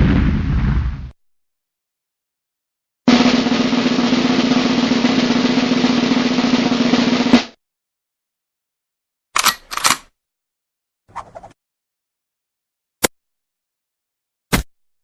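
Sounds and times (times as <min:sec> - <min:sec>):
snare drum roll: 0:03.1 - 0:07.6.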